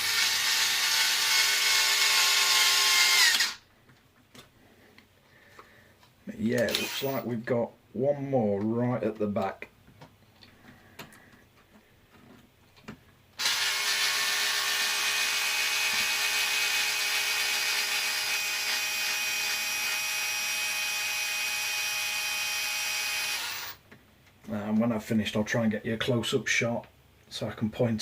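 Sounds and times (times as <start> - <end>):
power driver whirring: 0.0 - 3.6, 6.6 - 7.2, 13.4 - 23.8.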